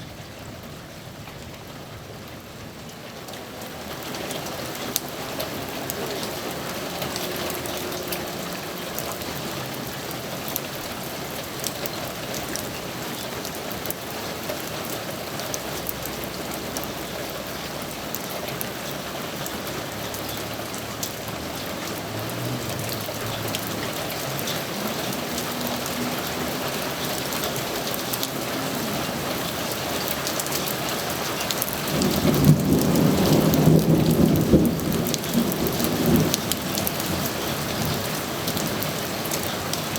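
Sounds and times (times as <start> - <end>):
steady rain falling: 0.0 - 39.9
thunder rumbling: 15.6 - 39.9.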